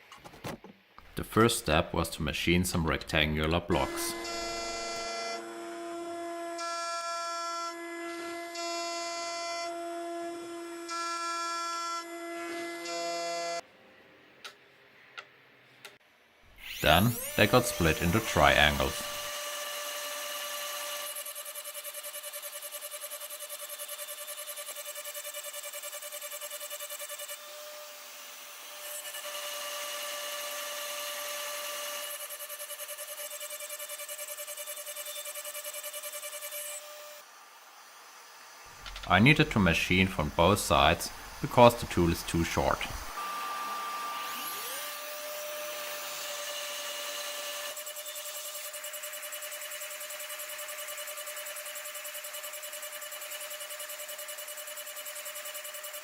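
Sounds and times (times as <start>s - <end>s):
milling machine whine: 16.6s - 21.2s, 36.1s - 46.6s
milling machine cutting metal: 16.6s - 22.1s.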